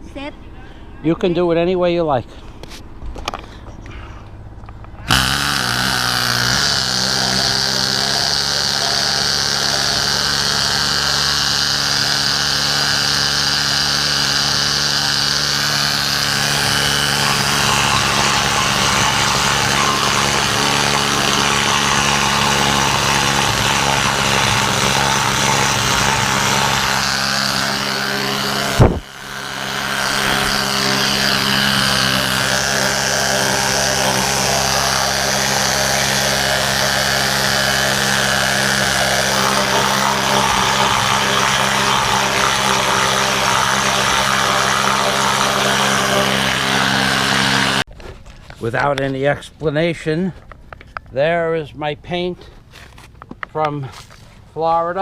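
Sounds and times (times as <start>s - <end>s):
needle scaler hammering: 5.1s - 47.9s.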